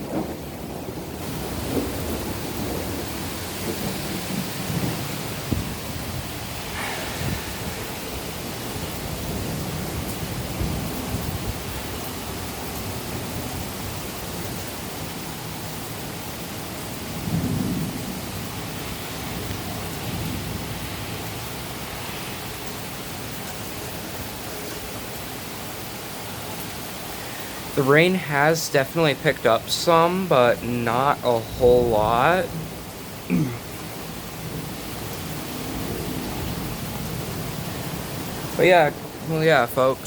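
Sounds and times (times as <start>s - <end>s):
low rumble of thunder: 0.0s - 14.6s, 16.8s - 22.7s, 31.4s - 39.3s
steady rain falling: 0.0s - 40.0s.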